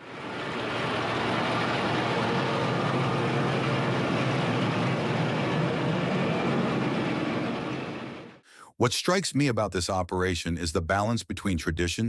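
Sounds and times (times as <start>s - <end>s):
low hum: 0.0s - 8.4s
tractor and harvesting machinery running: 0.0s - 8.4s.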